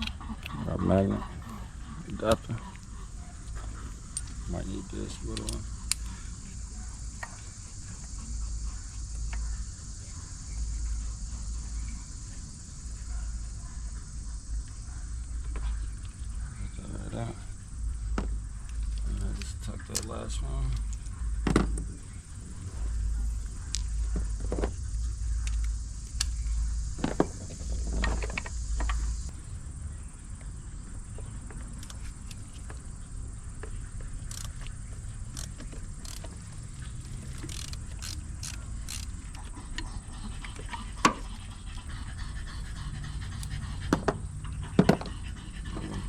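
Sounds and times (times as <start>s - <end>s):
panting breaths: 0.0s - 25.9s, 34.3s - 46.0s
hand tools clicking and clinking: 5.1s - 6.1s, 34.2s - 39.8s.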